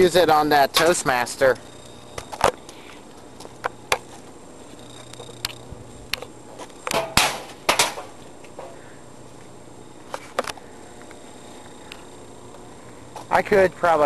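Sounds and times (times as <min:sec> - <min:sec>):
cracks and knocks: 0:06.2 - 0:08.8.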